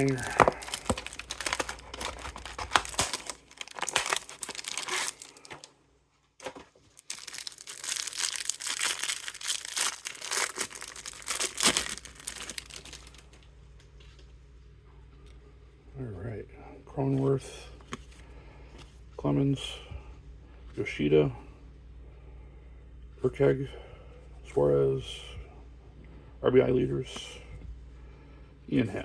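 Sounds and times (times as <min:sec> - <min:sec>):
plastic wrapping crinkling and tearing: 0:00.0 - 0:05.7, 0:06.4 - 0:13.4.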